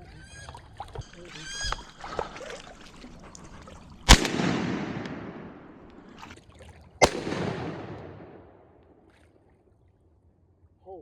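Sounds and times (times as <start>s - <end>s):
shotgun shots: 4.1s - 6.2s, 7.0s - 8.8s
rolling echo: 4.1s - 6.3s, 7.0s - 9.0s.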